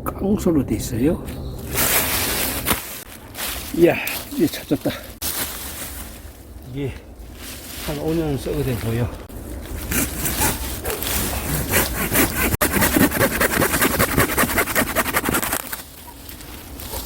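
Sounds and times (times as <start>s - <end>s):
rotten log scraped and broken: 9.6s - 17.0s.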